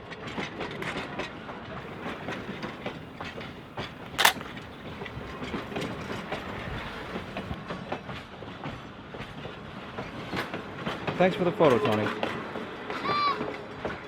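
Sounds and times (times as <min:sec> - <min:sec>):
train wheels clicking over rail joints: 0:02.2 - 0:07.6
sharp metal clank: 0:04.1 - 0:04.6.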